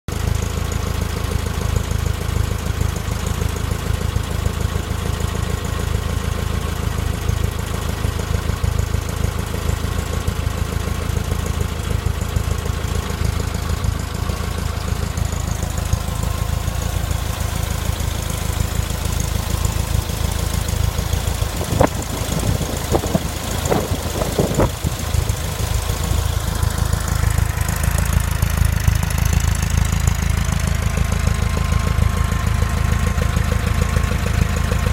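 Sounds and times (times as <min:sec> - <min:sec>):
car engine idling: 0:00.1 - 0:34.9
irregular engine knocks: 0:19.7 - 0:27.8.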